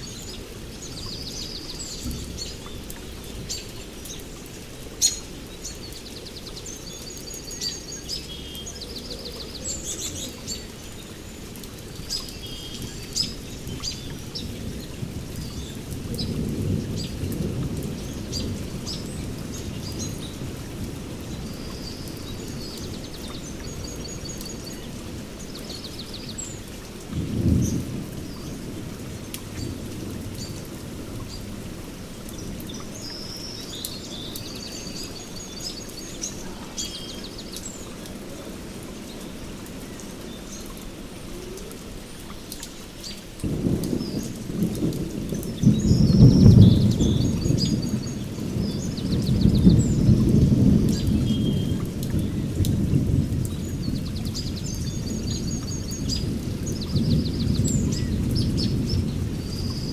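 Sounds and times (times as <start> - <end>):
thunder rumbling: 0.0 - 4.2, 12.8 - 25.4, 27.1 - 32.9, 43.4 - 59.9
birds chirping and trilling: 0.0 - 17.4, 32.3 - 38.3, 42.6 - 52.7, 53.5 - 59.9
steady rain: 0.0 - 59.9.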